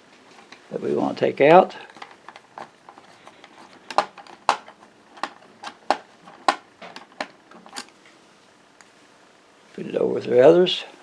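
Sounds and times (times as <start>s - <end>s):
screwdriver turning screw clicks: 1.9s - 7.9s.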